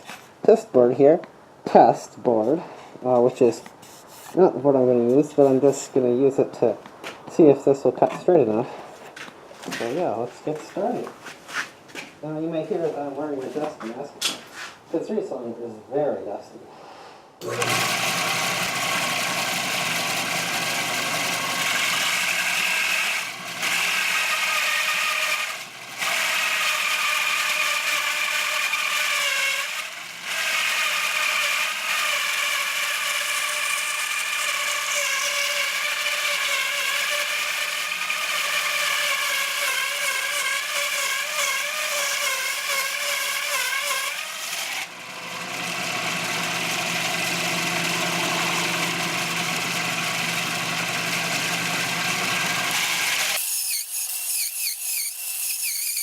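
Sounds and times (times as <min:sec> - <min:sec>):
band saw cutting wood: 0:17.4 - 0:56.0.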